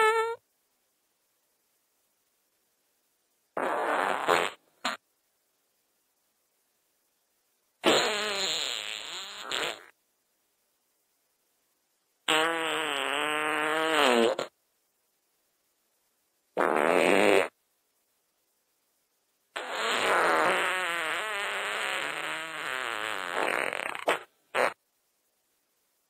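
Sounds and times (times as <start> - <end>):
fart sound effects: 0.0 - 0.4, 3.6 - 5.0, 7.8 - 9.9, 12.3 - 14.5, 16.6 - 17.6, 19.6 - 24.8.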